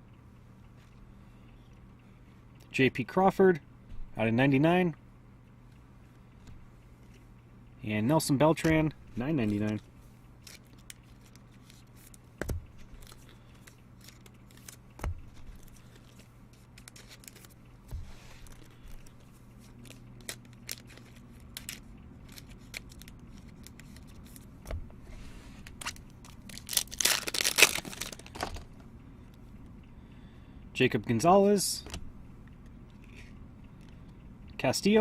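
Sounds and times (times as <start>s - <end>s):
cards and wrappers clicking: 8.6s - 17.7s, 18.3s - 24.5s, 25.6s - 28.8s
foil wrapper tearing and crinkling: 16.7s - 17.6s, 19.7s - 24.4s, 25.7s - 28.7s.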